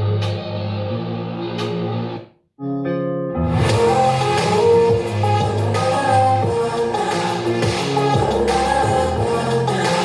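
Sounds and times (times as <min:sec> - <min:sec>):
music with singing through speaker: 0:03.6 - 0:10.0.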